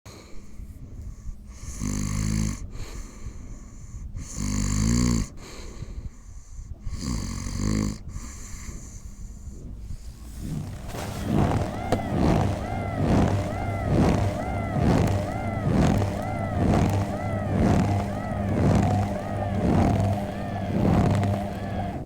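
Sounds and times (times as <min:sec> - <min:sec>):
massage machine running: 0:09.8 - 0:22.0
person snoring loudly: 0:10.2 - 0:22.0.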